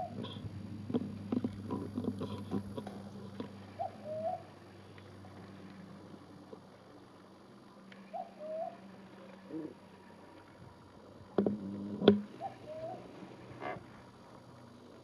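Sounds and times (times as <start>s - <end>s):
animal snore-like mating call: 0.0s - 4.0s, 11.5s - 13.8s
steady low hum: 0.0s - 15.0s.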